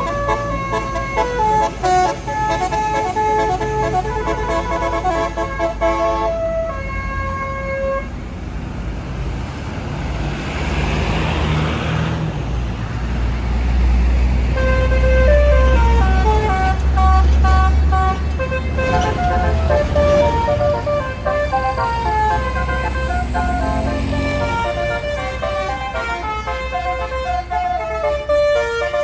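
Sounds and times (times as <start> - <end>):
multi-tone bus horn tune: 0.0 - 8.2, 14.4 - 29.0
bus engine rumble: 0.0 - 29.0.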